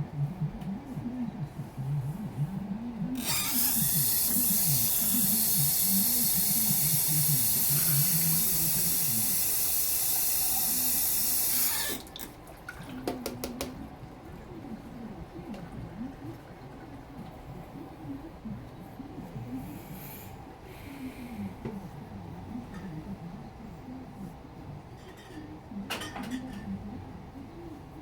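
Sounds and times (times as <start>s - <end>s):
water tap running: 3.2s - 13.6s.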